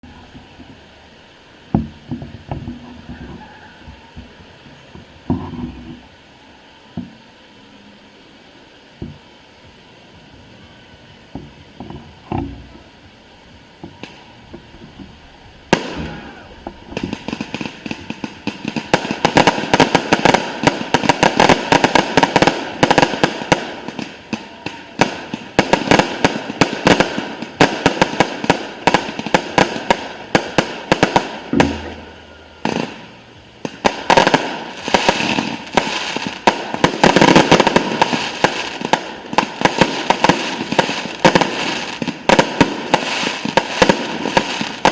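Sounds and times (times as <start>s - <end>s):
fireworks bangs and crackling: 0.0s - 6.1s, 9.0s - 44.9s.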